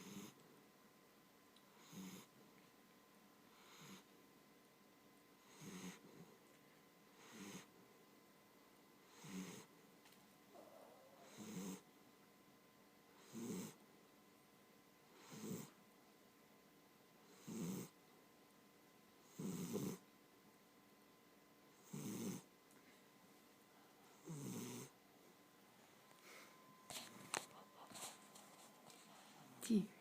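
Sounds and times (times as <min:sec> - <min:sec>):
pet snoring: 0:00.0 - 0:00.4, 0:01.7 - 0:02.4, 0:03.5 - 0:04.1, 0:05.4 - 0:06.3, 0:07.1 - 0:07.7, 0:09.0 - 0:09.7, 0:10.6 - 0:11.9, 0:13.1 - 0:13.8, 0:15.1 - 0:15.8, 0:17.2 - 0:18.0, 0:19.2 - 0:20.0, 0:21.7 - 0:22.5, 0:24.1 - 0:25.0.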